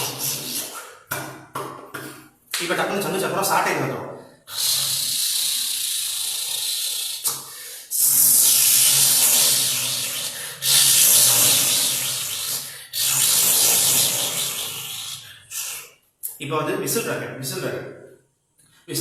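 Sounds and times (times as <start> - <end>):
long hissing noises: 4.5 - 15.9.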